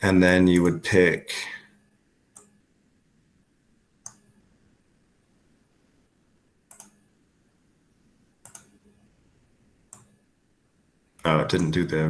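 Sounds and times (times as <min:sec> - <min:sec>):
faint room hiss: 0:00.0 - 0:12.0
computer mouse clicking: 0:02.3 - 0:02.6, 0:04.0 - 0:04.4, 0:06.7 - 0:07.1, 0:08.4 - 0:09.1, 0:09.9 - 0:10.2, 0:11.5 - 0:11.8.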